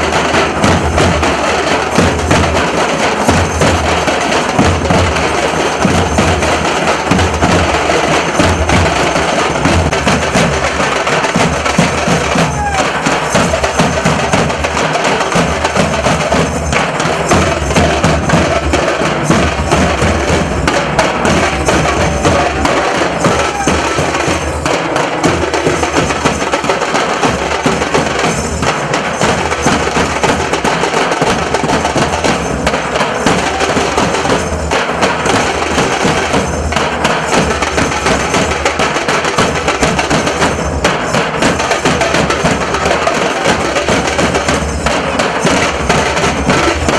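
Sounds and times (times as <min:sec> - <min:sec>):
deep dhol drums: 0:00.0 - 0:46.9.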